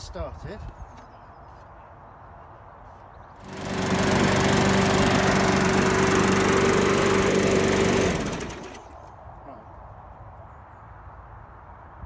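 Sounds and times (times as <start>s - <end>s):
lawn mower engine running: 3.4s - 9.1s.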